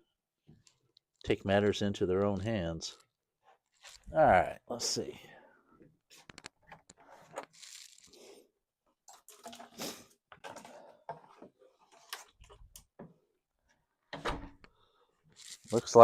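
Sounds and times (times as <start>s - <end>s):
rustling and scraping: 2.8s - 4.2s, 6.1s - 8.4s, 15.3s - 16.0s.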